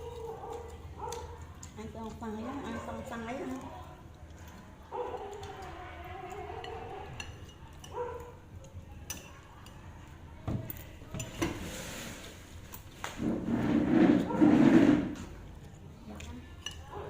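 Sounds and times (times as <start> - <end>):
dishes clinking: 10.5 - 12.3.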